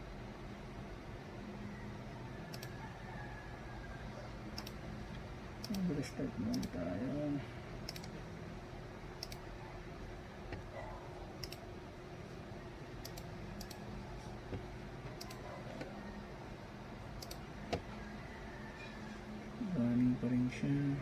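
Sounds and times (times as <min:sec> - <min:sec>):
steady low hum: 0:00.0 - 0:21.0
computer mouse and key clicks: 0:02.5 - 0:02.8, 0:04.5 - 0:06.9, 0:07.8 - 0:08.2, 0:09.2 - 0:09.5, 0:11.4 - 0:11.7, 0:13.0 - 0:16.0, 0:17.2 - 0:17.9.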